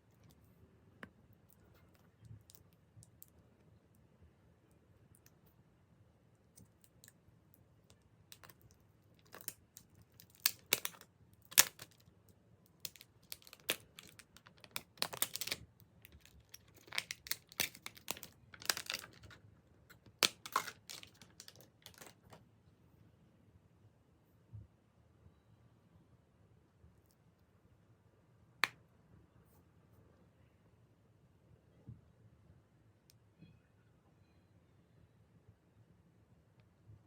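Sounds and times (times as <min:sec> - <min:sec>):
packaging rustling and peeling: 0:09.2 - 0:12.0, 0:12.8 - 0:22.3.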